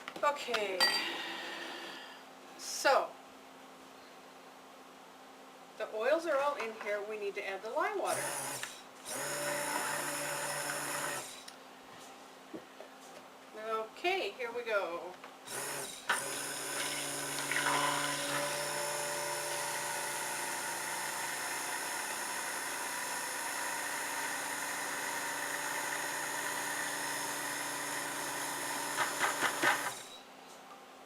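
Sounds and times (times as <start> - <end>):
stick blender running: 8.1 - 11.5, 15.5 - 30.2.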